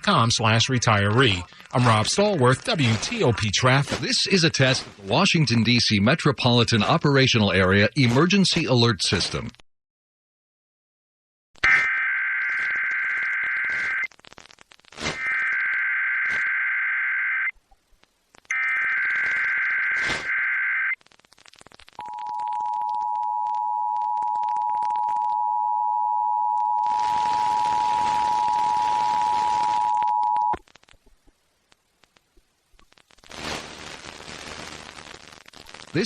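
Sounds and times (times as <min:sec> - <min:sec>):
raspy digital data bursts: 0:18.4 - 0:22.9, 0:26.8 - 0:30.0, 0:32.9 - 0:36.0.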